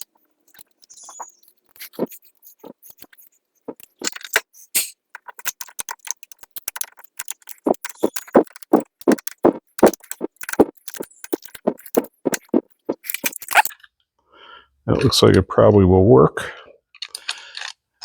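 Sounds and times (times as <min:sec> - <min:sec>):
small metal parts clicking: 0:00.0 - 0:13.7.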